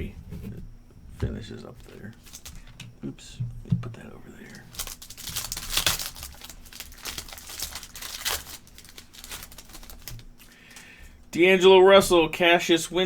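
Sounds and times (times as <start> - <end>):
wrapper crinkling and tearing: 1.9 - 2.7, 4.4 - 11.0.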